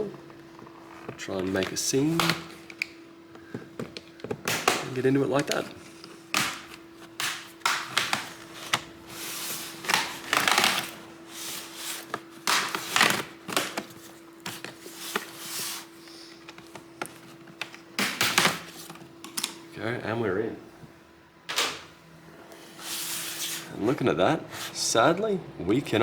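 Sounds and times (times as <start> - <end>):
plastic clips snapping: 3.9 - 5.6, 6.3 - 8.9.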